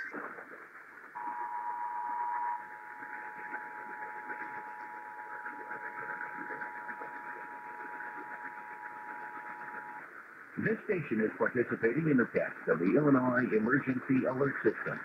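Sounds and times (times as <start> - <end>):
radio hiss: 0.0 - 15.0
two-tone alert signal: 1.2 - 10.0.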